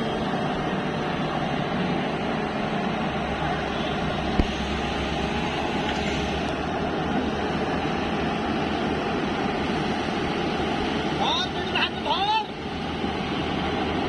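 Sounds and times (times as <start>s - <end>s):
excavator diesel engine running: 0.0s - 14.0s.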